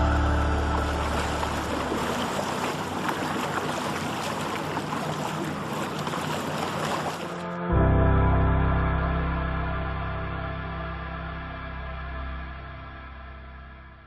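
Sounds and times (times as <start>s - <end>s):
sustained music chord: 0.0s - 2.4s, 7.2s - 14.0s
water rushing and splashing: 0.0s - 7.6s.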